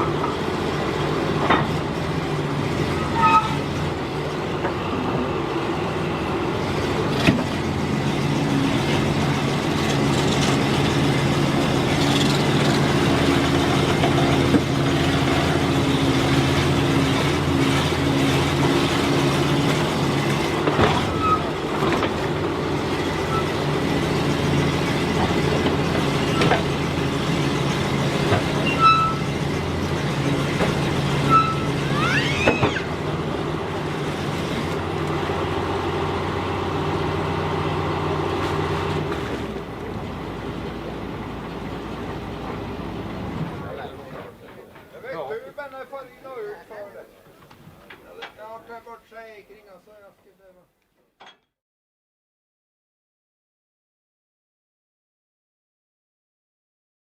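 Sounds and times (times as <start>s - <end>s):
backhoe engine running: 0.0s - 48.6s
short high squeaks: 3.0s - 3.8s, 21.0s - 21.6s, 28.6s - 29.4s, 31.2s - 33.0s.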